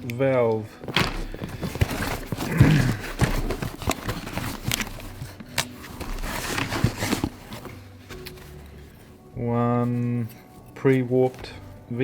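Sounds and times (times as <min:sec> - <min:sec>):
packaging rustling: 0:00.0 - 0:09.3.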